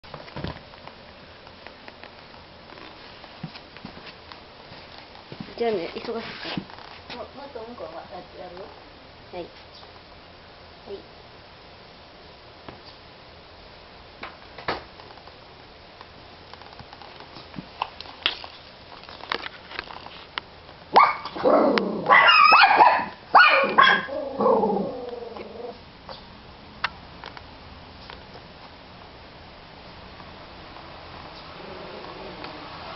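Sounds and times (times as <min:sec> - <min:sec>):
dog barking and whining: 0:20.9 - 0:25.8.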